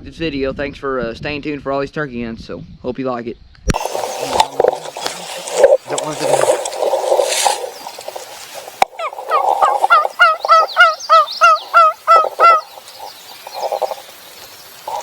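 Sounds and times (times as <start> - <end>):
turkey yelps: 7.5 - 14.0.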